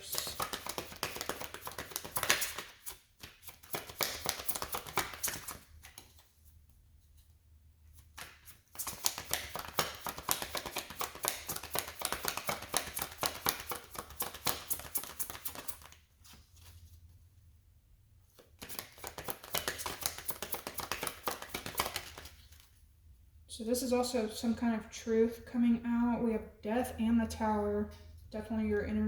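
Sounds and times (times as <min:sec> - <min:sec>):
cards being shuffled: 0:00.0 - 0:06.4, 0:07.9 - 0:16.8, 0:18.3 - 0:22.8.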